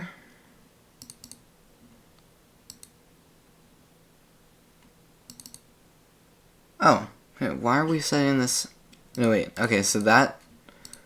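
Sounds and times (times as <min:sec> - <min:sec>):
faint keyboard or mouse clicks: 0:01.0 - 0:01.4, 0:02.2 - 0:03.0, 0:04.8 - 0:05.7, 0:08.9 - 0:09.4, 0:10.0 - 0:11.0.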